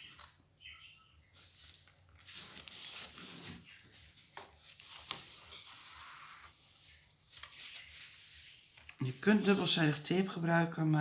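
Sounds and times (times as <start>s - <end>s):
paper rustling and scraping: 1.2s - 9.8s.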